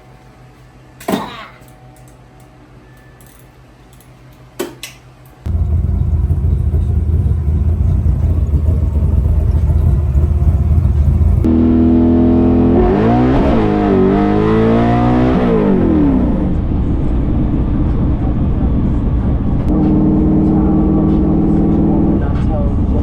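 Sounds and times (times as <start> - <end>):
drag car engine revving: 5.5 - 18.0, 18.7 - 22.5.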